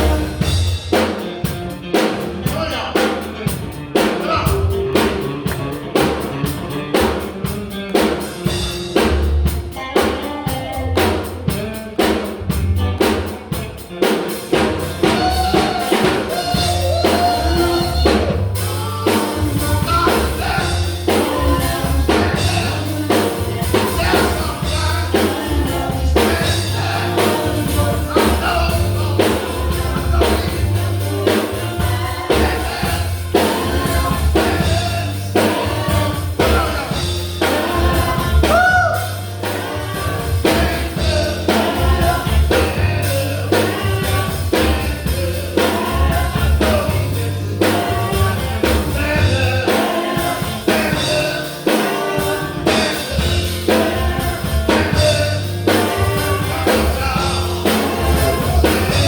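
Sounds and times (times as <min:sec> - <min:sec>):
bass guitar: 0:00.0 - 0:59.0
drum kit beat: 0:00.0 - 0:59.0
keyboard: 0:00.0 - 0:59.0
person singing: 0:15.0 - 0:59.0.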